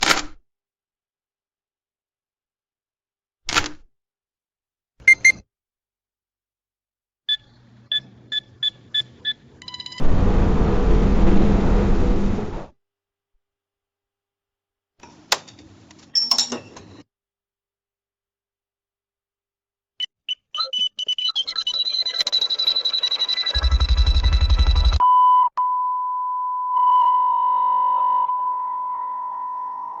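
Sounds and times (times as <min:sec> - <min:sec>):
loud grainy noise: 0:10.0 - 0:12.7
fast pulsing electronic beep: 0:20.6 - 0:25.0
long steady beep tone: 0:20.6 - 0:29.9.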